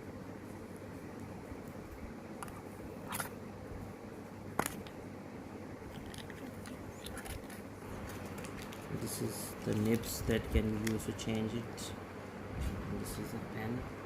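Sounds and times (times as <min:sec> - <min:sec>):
steady low hum: 0:00.0 - 0:14.0
package handling noise: 0:05.9 - 0:11.1.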